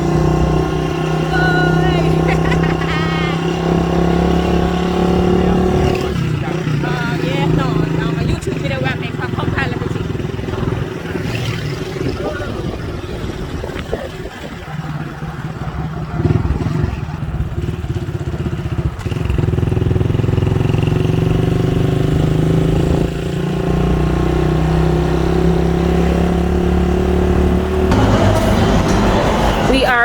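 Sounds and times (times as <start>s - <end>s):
vehicle engine running: 0.0s - 30.0s.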